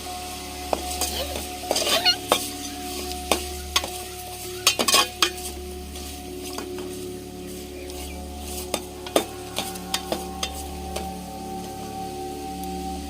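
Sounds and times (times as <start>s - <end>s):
chicken sizzling in a pan: 0.0s - 11.7s
metal spoon scraping a pan: 0.8s - 4.0s, 4.6s - 5.5s, 8.5s - 10.7s.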